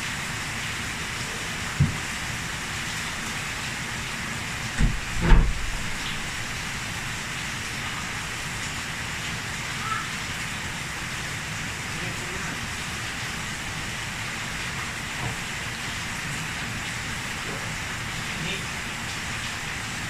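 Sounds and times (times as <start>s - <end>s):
rain falling: 0.0s - 20.0s
dull knocks: 4.8s - 6.3s.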